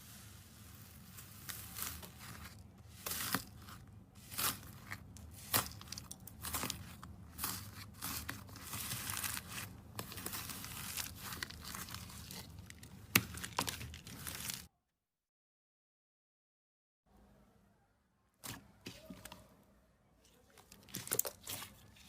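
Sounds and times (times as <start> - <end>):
slime crackling and popping: 1.3 - 14.7.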